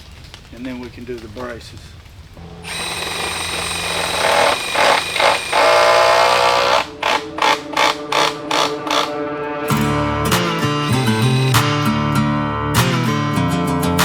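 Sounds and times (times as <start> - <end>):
cordless power tool whining: 2.4 - 11.8.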